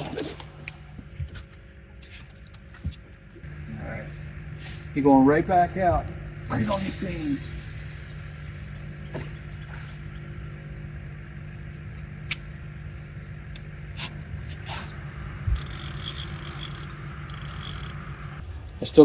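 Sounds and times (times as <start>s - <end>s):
low steady hum: 0.0s - 19.0s
night insects chirring: 0.0s - 19.0s
sharp clicks: 12.2s - 12.6s, 14.8s - 18.4s.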